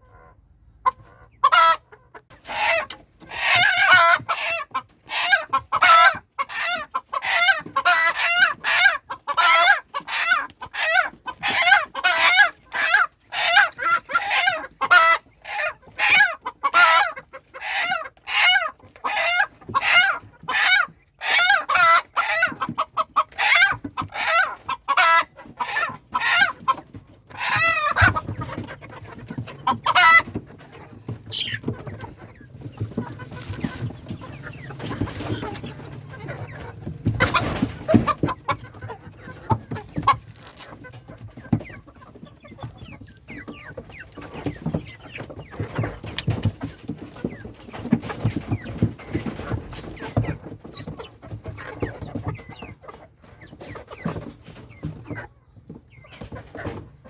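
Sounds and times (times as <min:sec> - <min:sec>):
chickens clucking: 0:00.0 - 0:57.0.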